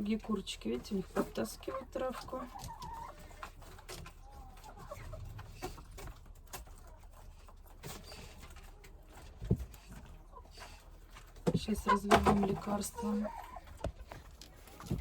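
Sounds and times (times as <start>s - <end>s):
chickens clucking: 0.0s - 15.0s
clicks and rustles of pecking: 2.1s - 12.5s, 13.6s - 15.0s.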